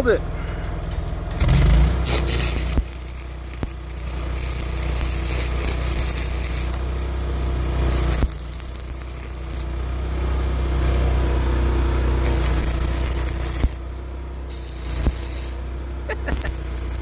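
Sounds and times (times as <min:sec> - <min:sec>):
engine humming: 0:00.0 - 0:17.0
high hiss: 0:02.1 - 0:06.8, 0:14.5 - 0:15.6.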